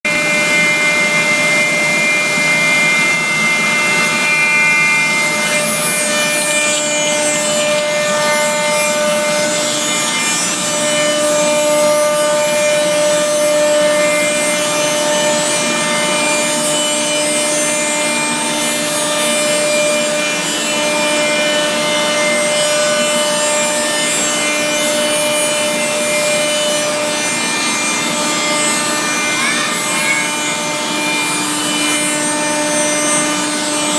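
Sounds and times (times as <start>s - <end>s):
cutter rasping wood: 0.1s - 33.9s
router spindle whine: 0.1s - 33.9s.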